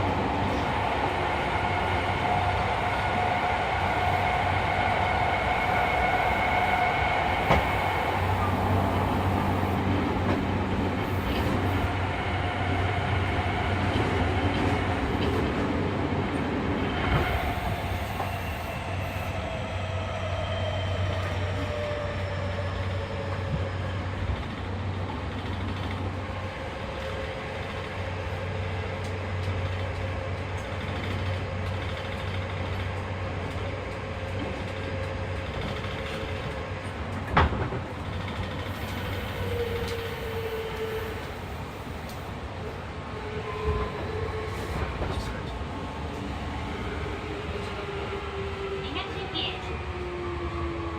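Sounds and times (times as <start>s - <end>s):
low train rumble: 0.0s - 50.9s
train motor whine: 25.9s - 49.6s.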